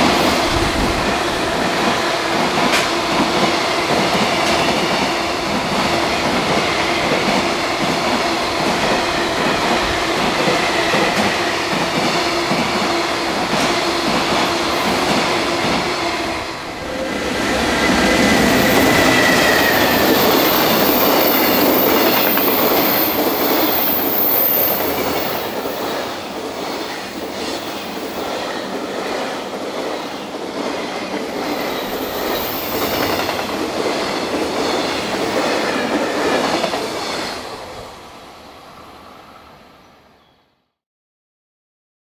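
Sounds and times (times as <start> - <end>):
high wheel squeal: 17.4 - 26.1.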